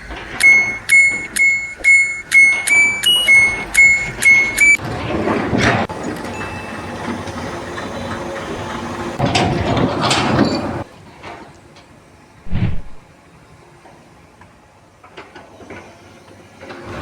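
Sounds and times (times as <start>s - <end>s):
steady mechanical rumble: 0.0s - 4.8s
short thump: 12.5s - 13.0s.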